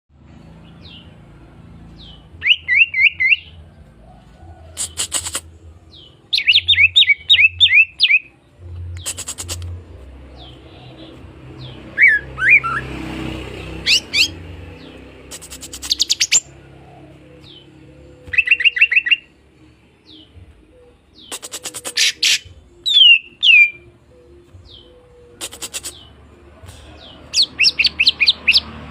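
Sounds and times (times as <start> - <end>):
bird whistling: 2.4 - 3.5, 6.3 - 8.3, 12.0 - 12.8, 13.8 - 14.4, 15.3 - 16.5, 17.4 - 19.3, 21.1 - 26.1, 27.3 - 28.6.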